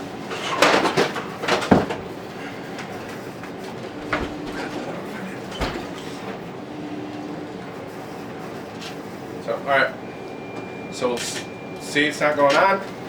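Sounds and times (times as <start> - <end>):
three d printer humming: 0.0 - 13.0
rustling and clattering: 0.2 - 6.3.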